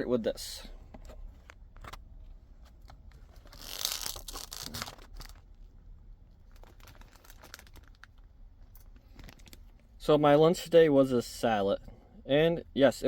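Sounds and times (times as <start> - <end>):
packaging tearing and crinkling: 3.4 - 5.5, 6.5 - 8.2.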